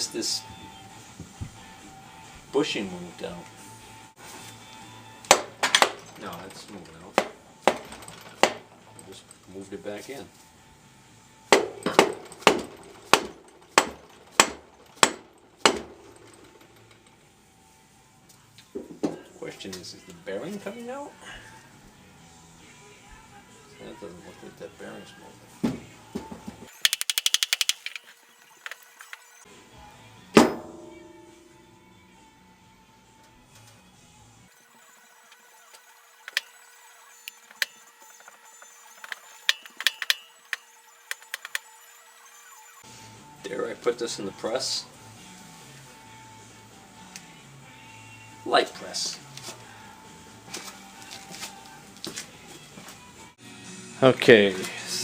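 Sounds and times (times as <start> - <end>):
metal parts clicking and clinking: 7.8 - 9.5, 26.7 - 29.4, 34.7 - 42.4
mallet striking metal shaft: 37.2 - 41.7.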